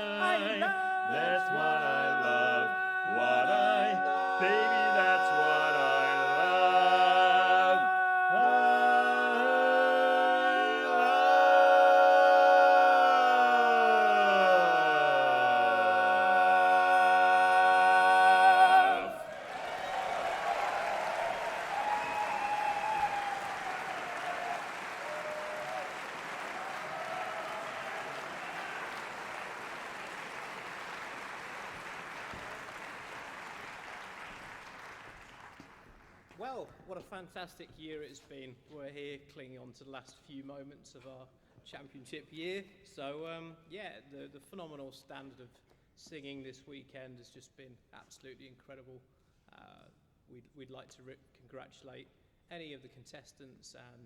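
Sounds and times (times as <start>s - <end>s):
barbershop quartet singing: 0.0s - 19.7s
audience applauding: 0.0s - 36.3s.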